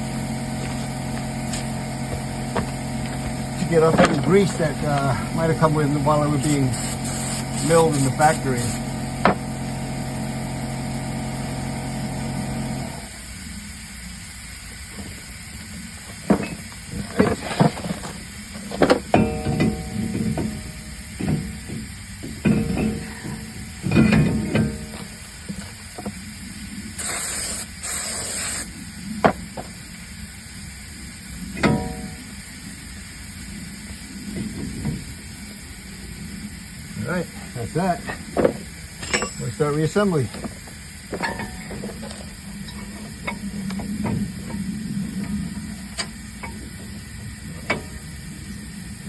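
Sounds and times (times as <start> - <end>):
steady hum: 0.0 - 49.0
aerosol spray hissing: 6.1 - 8.9, 27.0 - 28.8
metal knocks and clanks: 16.3 - 25.2, 38.0 - 44.7.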